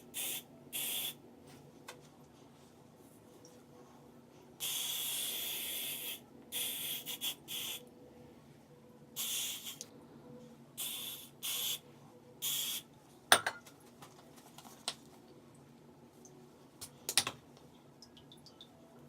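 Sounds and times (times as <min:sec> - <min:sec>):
aerosol spray hissing: 0:00.1 - 0:01.2, 0:04.6 - 0:07.8, 0:09.2 - 0:09.8, 0:10.8 - 0:11.8, 0:12.4 - 0:12.8.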